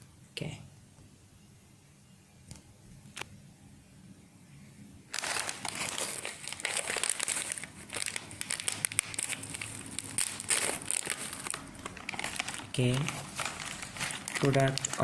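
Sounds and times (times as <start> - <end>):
snack packet crinkling: 5.1 - 15.0.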